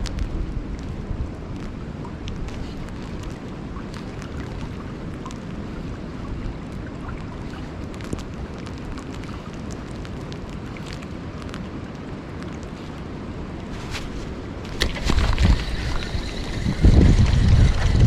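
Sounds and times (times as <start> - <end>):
wind buffeting microphone: 0.0 - 18.0
light ticks: 1.5 - 5.6
river water rushing: 2.8 - 18.0.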